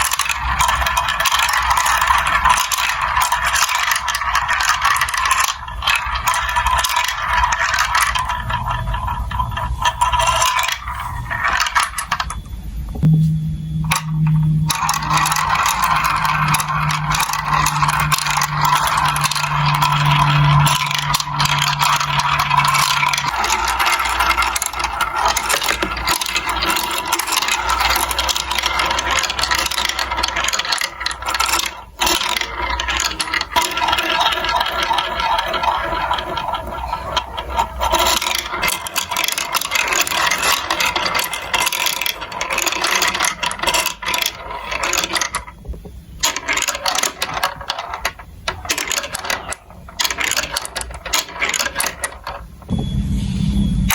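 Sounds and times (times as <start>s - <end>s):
marbles rattling through plastic run: 0.0s - 12.4s, 13.9s - 52.7s
low rumble: 13.0s - 15.4s.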